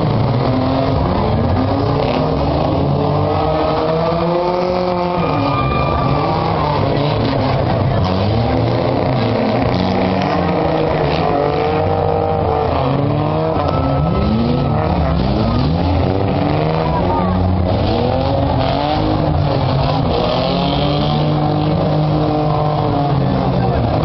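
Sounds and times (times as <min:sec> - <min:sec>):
car engines revving: 0:00.0 - 0:24.0.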